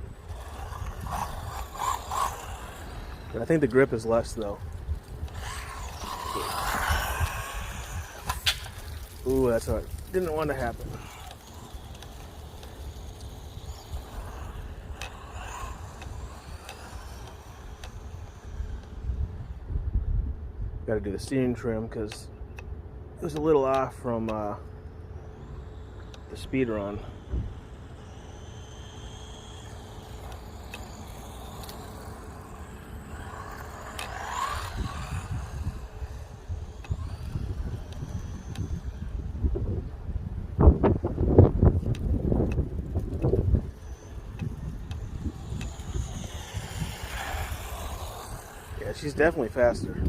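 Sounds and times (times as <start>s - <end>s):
wind buffeting microphone: 0.0s - 22.0s, 24.4s - 50.0s
faint high whine: 0.0s - 50.0s
sharp clicks: 4.4s - 19.0s.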